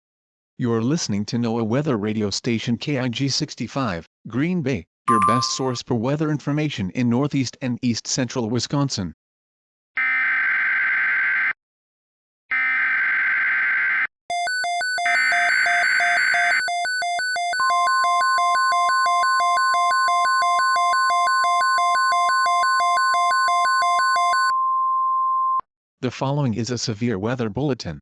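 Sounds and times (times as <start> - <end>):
two-pitch electronic alarm: 5.1 - 5.8, 14.3 - 24.5.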